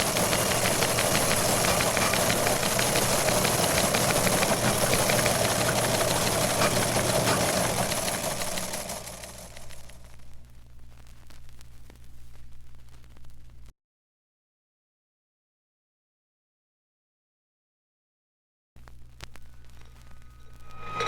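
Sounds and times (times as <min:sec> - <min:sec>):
engine running with fast rattle: 0:00.0 - 0:10.2
record surface crackle: 0:00.0 - 0:13.7, 0:18.8 - 0:21.0.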